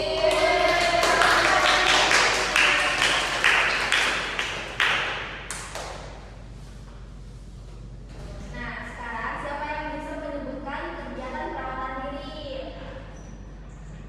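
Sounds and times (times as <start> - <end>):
group clapping: 0.0 - 6.3.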